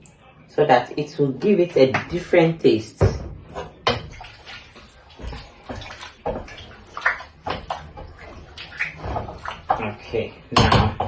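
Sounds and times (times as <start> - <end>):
water sloshing in a pot: 1.2 - 11.0
knocks and scrapes on a pot: 4.8 - 11.0.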